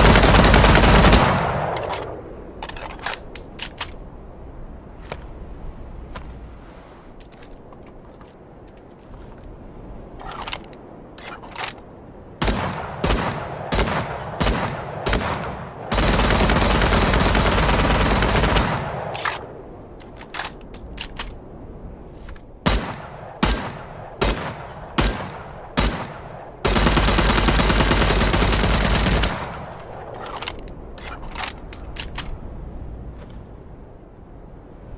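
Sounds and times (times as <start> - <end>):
assault rifle firing: 22.7 - 29.8.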